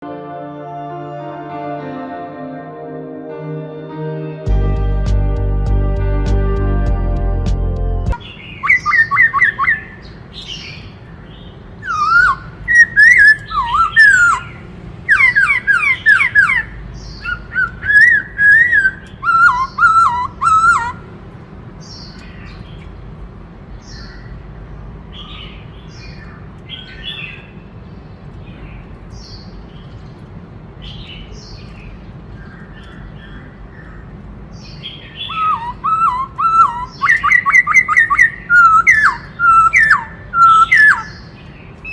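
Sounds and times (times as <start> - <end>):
bird whistling song: 8.2 - 10.8, 11.8 - 21.0, 34.8 - 41.9
faint bird calls: 34.9 - 41.9.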